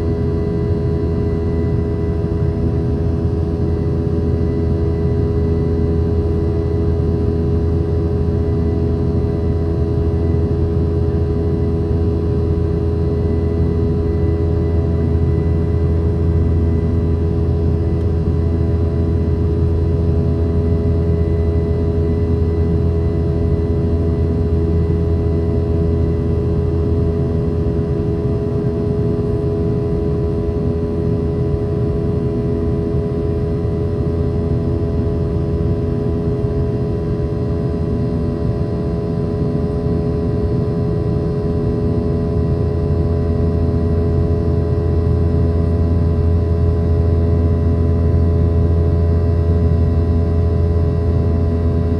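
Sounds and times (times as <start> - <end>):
jet engine cabin drone: 0.0 - 51.9.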